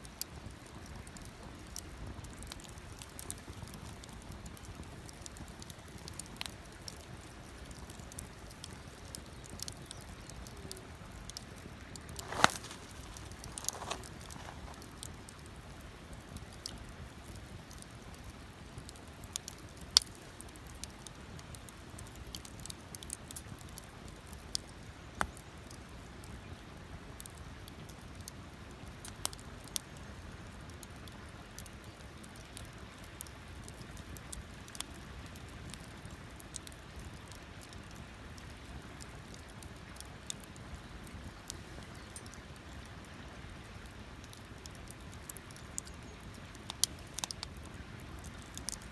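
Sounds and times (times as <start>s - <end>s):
campfire crackling and popping: 0.0s - 48.9s.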